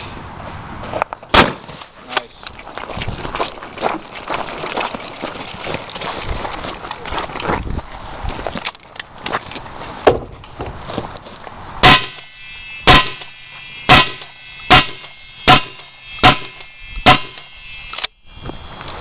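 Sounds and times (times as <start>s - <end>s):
shotgun shots: 1.3s - 1.7s, 11.8s - 18.1s.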